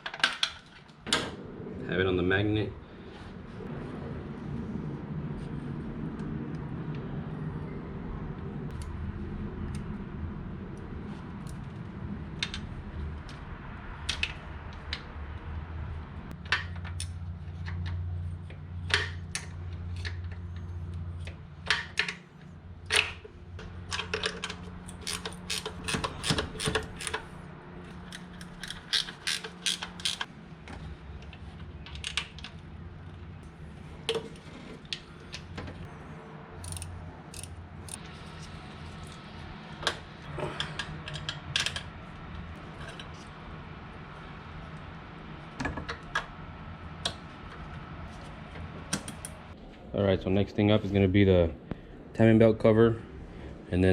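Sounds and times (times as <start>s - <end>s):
low hum: 0.6s - 53.9s
metal fasteners clinking: 18.8s - 30.3s, 36.6s - 39.2s
ratchet clicking: 24.8s - 27.2s, 28.1s - 30.3s, 36.6s - 38.0s.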